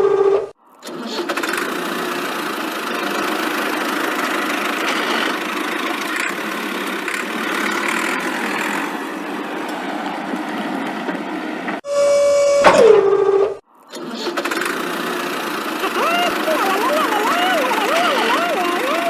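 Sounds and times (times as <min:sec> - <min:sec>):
vehicle engine running: 0:01.0 - 0:10.2, 0:14.3 - 0:19.0.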